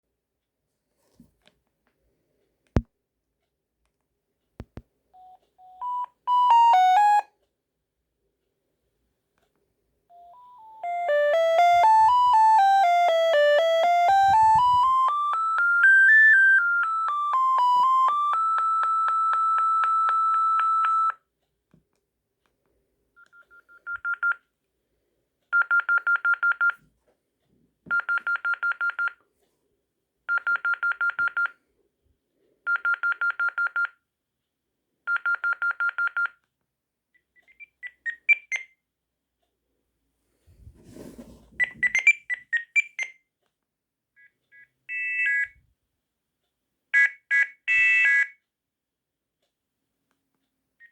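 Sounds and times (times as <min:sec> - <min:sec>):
phone beeping ringtone tune: 0:05.2 - 0:07.3, 0:10.1 - 0:21.2
phone ring of rapid beeps: 0:05.2 - 0:07.3, 0:10.1 - 0:21.2.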